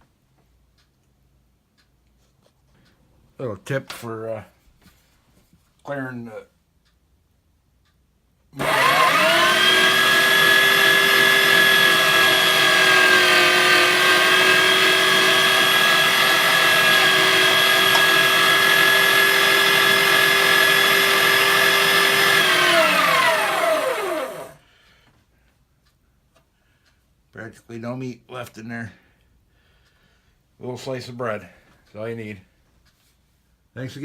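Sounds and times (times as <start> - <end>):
electric meat grinder motor whine: 8.6 - 24.6.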